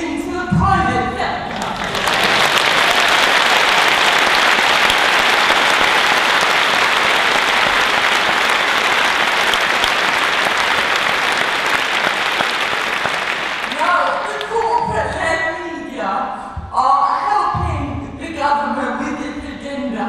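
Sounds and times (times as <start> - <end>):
large audience applauding: 1.5 - 14.8.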